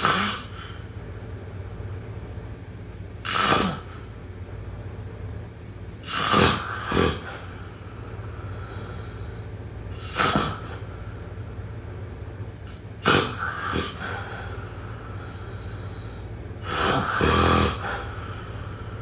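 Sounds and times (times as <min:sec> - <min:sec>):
steady low hum: 0:00.0 - 0:19.0
person snoring: 0:16.7 - 0:19.0.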